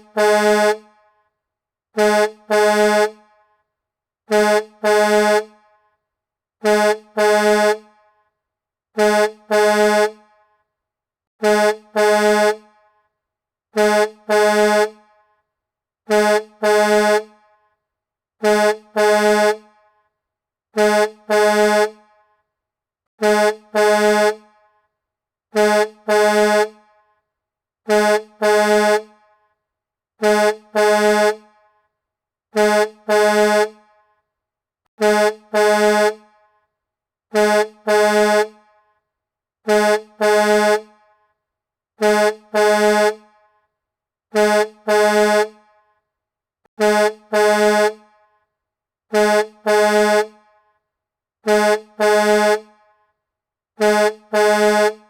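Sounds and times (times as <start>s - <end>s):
truck horn double honks: 0.0s - 0.9s, 2.0s - 3.4s, 4.3s - 5.7s, 6.6s - 8.0s, 9.0s - 10.4s, 11.4s - 12.8s, 13.7s - 15.2s, 16.1s - 17.5s, 18.4s - 19.9s, 20.7s - 22.1s, 23.2s - 24.6s, 25.5s - 26.9s, 27.9s - 29.3s, 30.2s - 31.8s, 32.5s - 34.0s, 35.0s - 36.4s, 37.3s - 38.6s, 39.6s - 41.0s, 42.0s - 43.4s, 44.3s - 45.6s, 46.8s - 48.1s, 49.1s - 50.4s, 51.4s - 52.8s, 53.8s - 55.0s.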